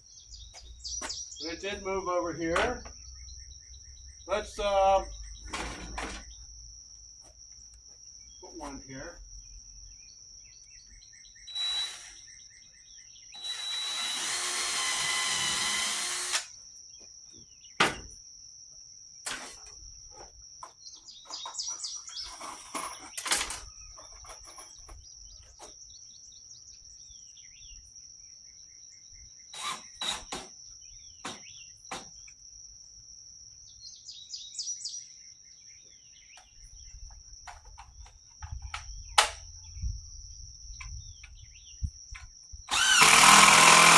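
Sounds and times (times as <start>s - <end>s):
birds chirping: 0.0s - 18.2s, 19.7s - 32.4s, 33.6s - 43.9s
high insect trill: 0.0s - 43.9s
cordless drill running: 11.5s - 12.3s, 13.4s - 16.5s, 29.6s - 30.3s, 42.7s - 43.9s.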